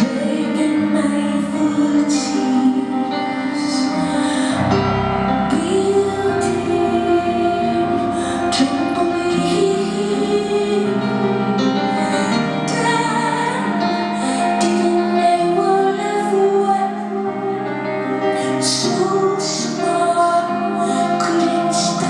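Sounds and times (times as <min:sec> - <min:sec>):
held keyboard chords: 0:00.0 - 0:22.0
woman singing: 0:00.0 - 0:22.0.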